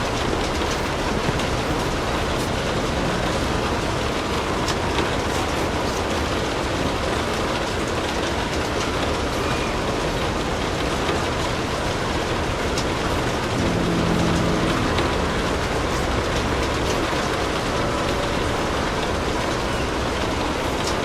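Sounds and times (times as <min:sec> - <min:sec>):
steady rain: 0:00.0 - 0:21.0
low humming tone: 0:13.2 - 0:20.6.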